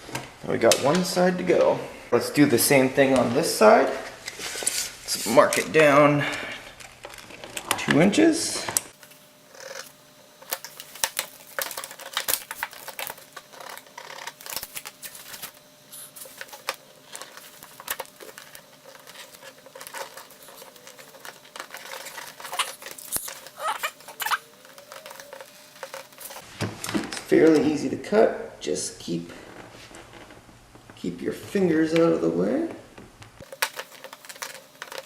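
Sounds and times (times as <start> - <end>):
handling rustle: 10.4 - 26.4, 33.4 - 35.0.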